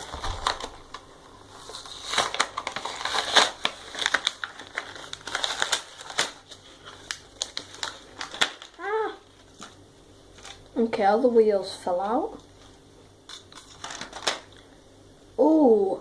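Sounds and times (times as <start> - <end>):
cardboard packaging crinkling: 0.0 - 10.7, 13.3 - 14.6.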